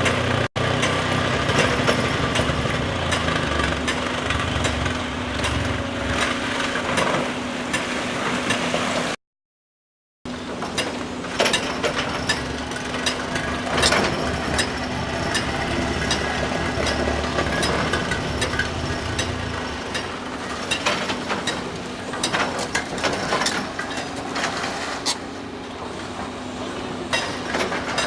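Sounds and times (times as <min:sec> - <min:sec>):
excavator engine: 0:00.0 - 0:09.2, 0:10.3 - 0:28.0.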